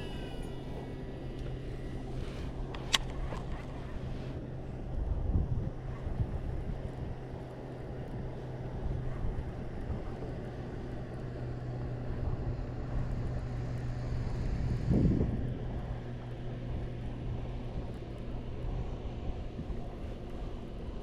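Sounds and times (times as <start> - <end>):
wind on microphone: 0.0 - 7.4, 12.1 - 21.0
boat motor humming: 0.0 - 21.0.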